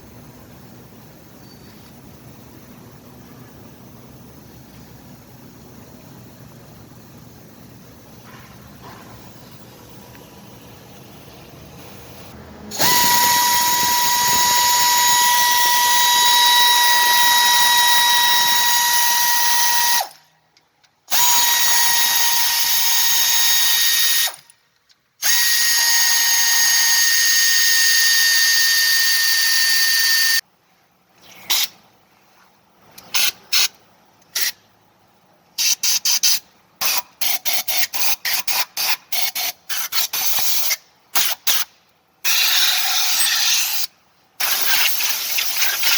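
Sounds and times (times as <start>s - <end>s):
power tool whining: 11.8s - 20.2s.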